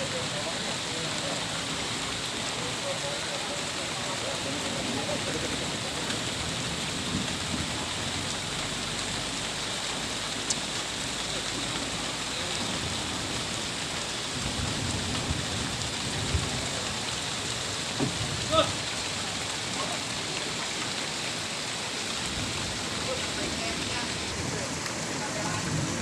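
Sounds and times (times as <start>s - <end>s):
heavy rain: 0.0s - 26.0s
dull knock: 18.0s - 18.3s.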